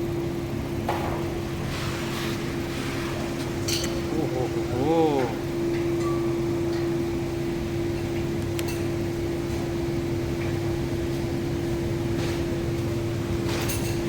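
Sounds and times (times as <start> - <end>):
mechanical hum: 0.0 - 14.0.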